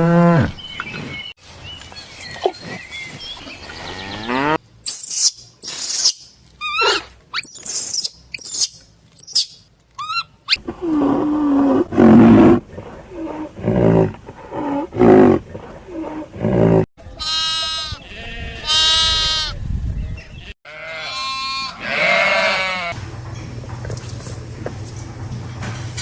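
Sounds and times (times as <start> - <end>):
high wavering animal calls: 4.9 - 10.6.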